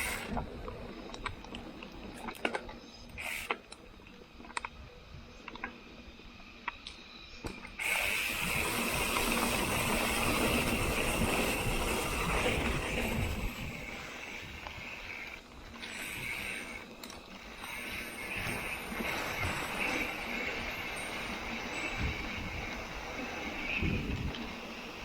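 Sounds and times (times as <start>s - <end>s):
bike hub ratcheting buzz: 0.0s - 0.4s, 3.1s - 3.7s, 7.7s - 25.0s.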